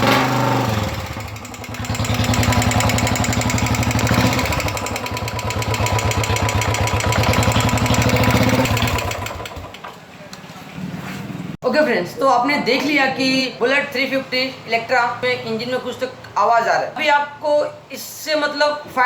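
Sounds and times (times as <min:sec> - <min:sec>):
motorcycle engine running: 0:00.0 - 0:09.8
engine tapping noise: 0:00.0 - 0:09.9.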